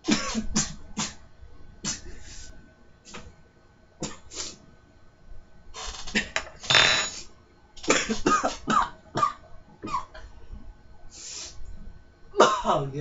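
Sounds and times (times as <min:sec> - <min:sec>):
man coughing: 0:00.0 - 0:01.2, 0:12.4 - 0:12.8.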